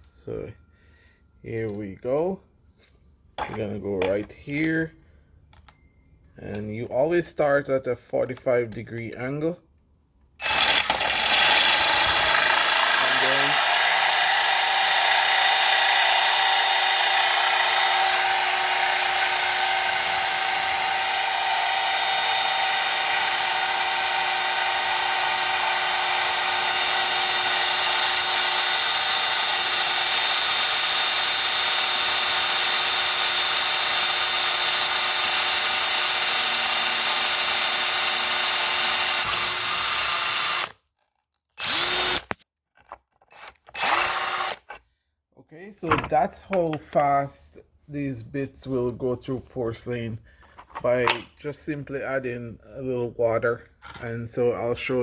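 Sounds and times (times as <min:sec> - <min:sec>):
power drill grinding through tile: 0:10.4 - 0:40.8, 0:41.6 - 0:42.4, 0:43.3 - 0:44.9.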